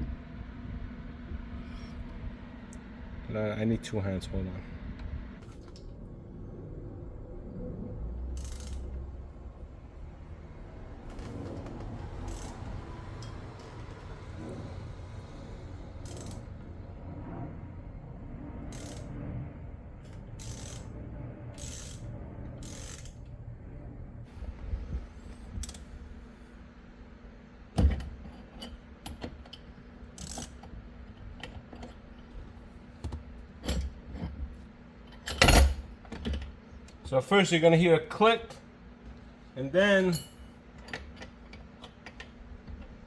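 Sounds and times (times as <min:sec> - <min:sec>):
clicks and knocks of tools: 0:27.8 - 0:32.3, 0:40.1 - 0:43.0.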